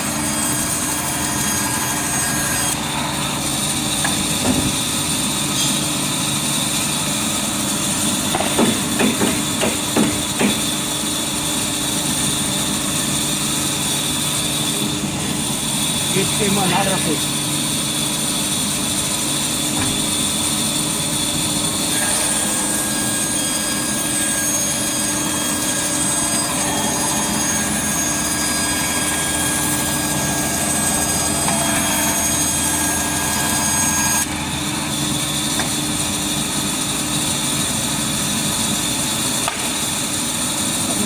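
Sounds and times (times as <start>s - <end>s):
band saw running: 0.0s - 41.0s
high blade whine: 10.3s - 41.0s.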